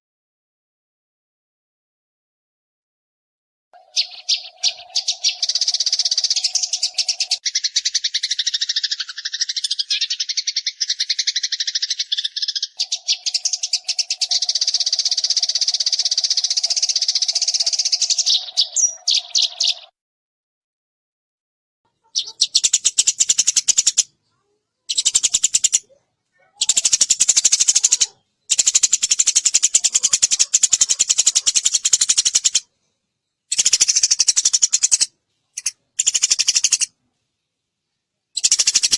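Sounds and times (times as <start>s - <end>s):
sparrow chattering: 3.8s - 19.9s, 21.9s - 32.7s, 33.5s - 37.0s, 38.4s - 38.9s.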